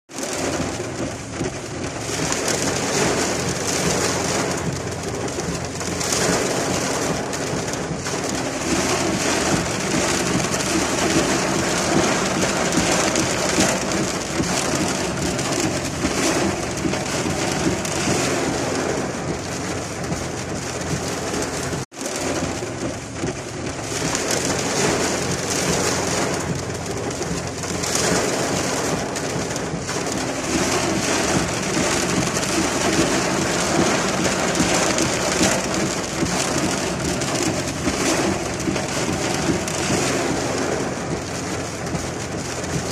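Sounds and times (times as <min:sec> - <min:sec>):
rain hissing on surfaces: 0:00.1 - 0:42.9.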